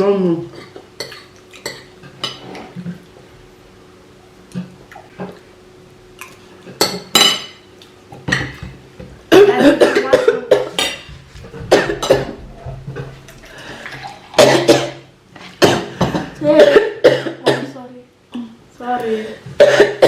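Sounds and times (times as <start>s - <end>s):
metal spoons clinking on plates: 6.8s - 7.6s.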